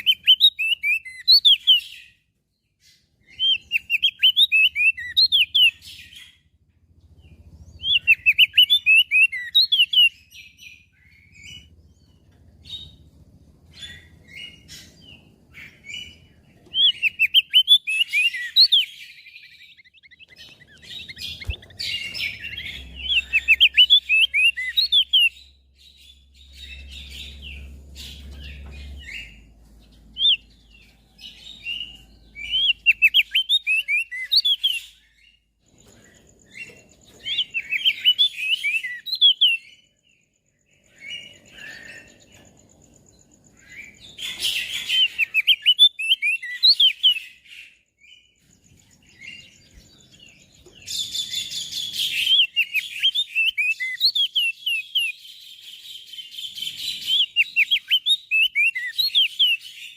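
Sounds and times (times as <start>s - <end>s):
bird chattering chirps: 7.2s - 13.1s, 13.7s - 39.9s.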